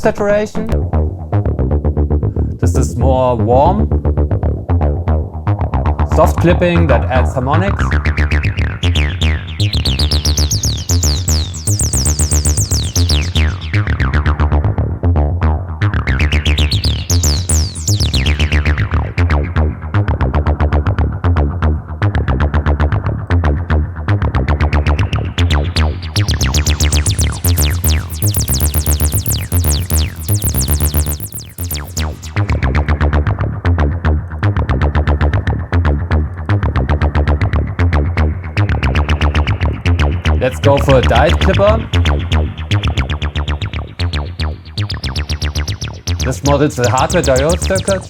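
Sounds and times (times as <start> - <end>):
distorted acid synth bassline: 3.6 - 48.0.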